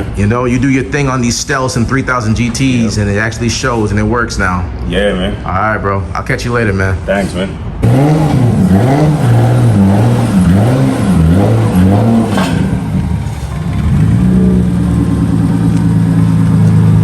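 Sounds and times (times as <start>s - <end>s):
car engine revving: 7.8s - 17.0s.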